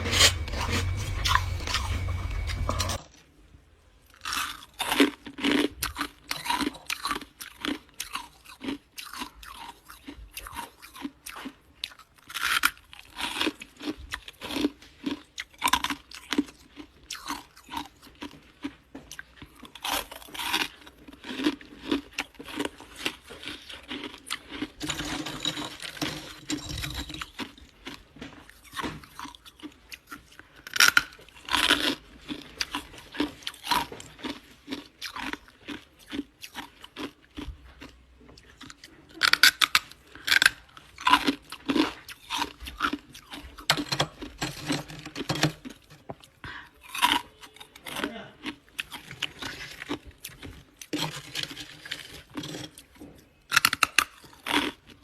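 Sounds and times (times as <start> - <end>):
ice being chewed: 0.0 - 3.2, 4.0 - 55.0.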